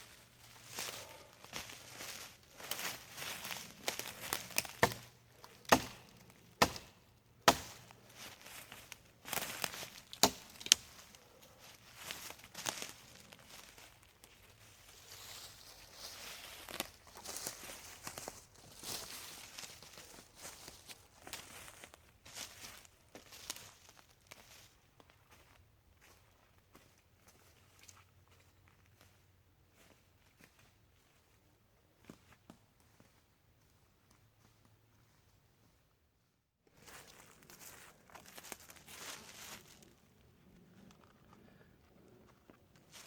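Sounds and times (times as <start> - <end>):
rustling and crunching: 0.0 - 24.7, 36.7 - 43.0
footsteps on forest floor: 0.0 - 31.4, 36.7 - 40.1, 40.9 - 43.0.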